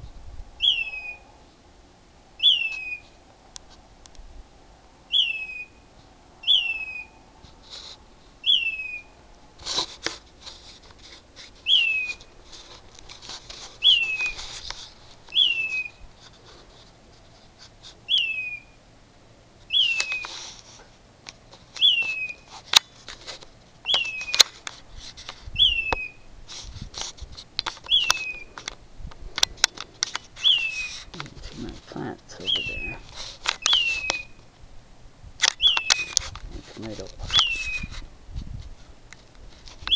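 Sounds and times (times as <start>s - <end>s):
bird whistled call: 0.6s - 1.3s, 2.4s - 3.2s, 5.1s - 7.2s, 8.4s - 9.2s, 11.6s - 12.3s, 13.8s - 14.4s, 15.3s - 16.0s, 18.1s - 18.8s, 19.7s - 20.3s, 21.8s - 22.5s, 23.8s - 24.4s, 25.6s - 26.2s, 27.9s - 28.5s, 30.4s - 31.1s, 32.4s - 33.0s, 33.6s - 34.4s, 35.6s - 36.1s, 37.3s - 37.9s
rustling: 6.8s - 18.8s, 19.5s - 34.7s, 35.4s - 39.9s
sharp clicks: 35.4s - 37.6s.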